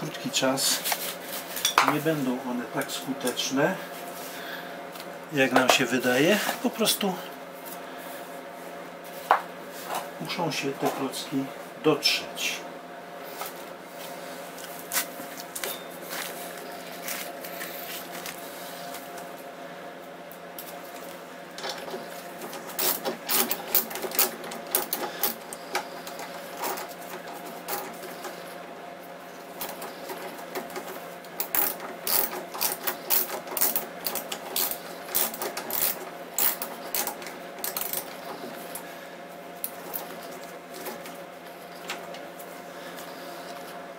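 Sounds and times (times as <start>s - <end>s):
faint steady hum: 0.0s - 43.9s
hand tools clicking: 31.4s - 38.2s.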